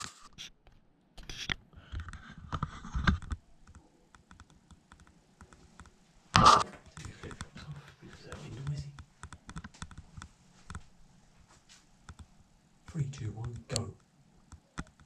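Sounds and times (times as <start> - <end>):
light clicks and taps: 6.7 - 10.9, 11.7 - 12.4, 13.1 - 15.0.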